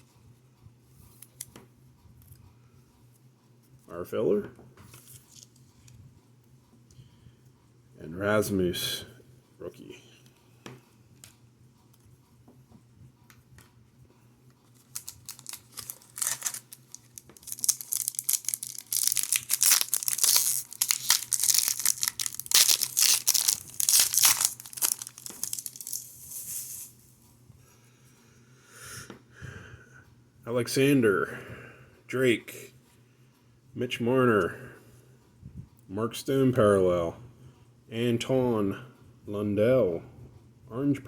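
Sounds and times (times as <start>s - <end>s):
wrapper tearing and crinkling: 14.8s - 26.3s.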